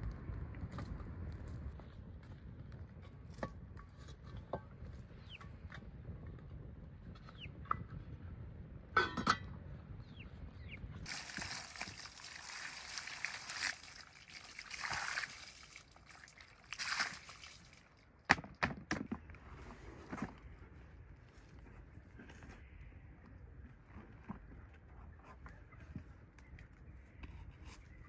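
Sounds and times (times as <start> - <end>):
water pouring into pot: 11.0 - 17.9.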